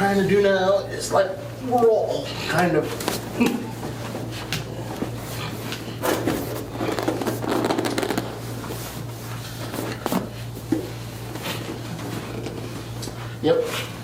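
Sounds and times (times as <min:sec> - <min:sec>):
steady low hum: 0:00.0 - 0:14.0
rustling and shuffling: 0:02.8 - 0:14.0.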